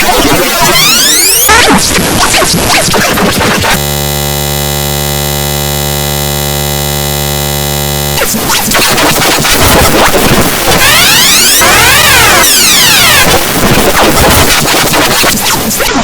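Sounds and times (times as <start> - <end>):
distorted clattering noise: 0.0 - 16.0
buzzing drone: 3.4 - 15.8.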